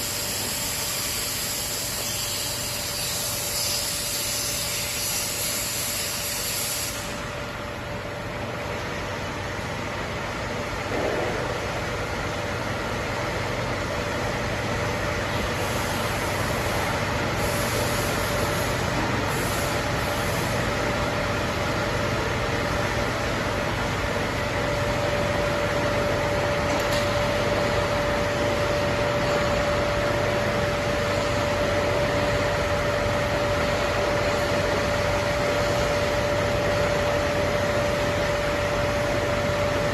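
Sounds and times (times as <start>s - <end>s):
high machine whine: 0.0s - 39.9s
milling machine hum: 0.0s - 39.9s.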